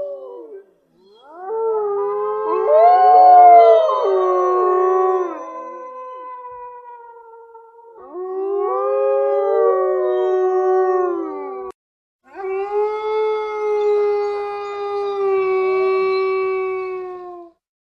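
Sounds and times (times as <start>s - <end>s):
wolves howling: 0.0s - 11.7s, 12.3s - 17.5s.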